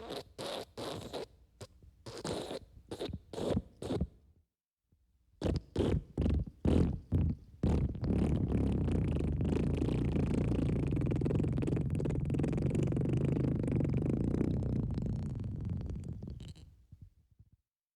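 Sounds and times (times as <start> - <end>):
wet fart sounds: 5.4 - 16.7.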